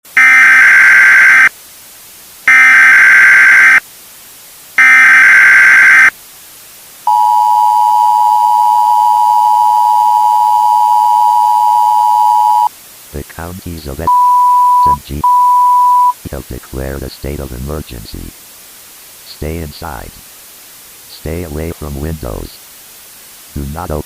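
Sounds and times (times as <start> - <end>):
digital data tone bursts: 0.1 - 1.5, 2.5 - 3.8, 4.8 - 6.1, 7.1 - 12.7, 14.0 - 16.2
two-tone attention signal: 0.2 - 1.5, 2.5 - 3.8, 4.8 - 6.1, 7.1 - 12.7, 14.1 - 16.2.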